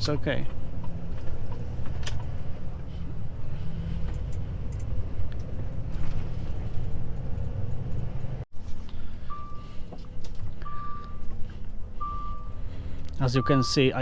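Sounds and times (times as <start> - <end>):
truck diesel engine rumbling: 0.0 - 14.0.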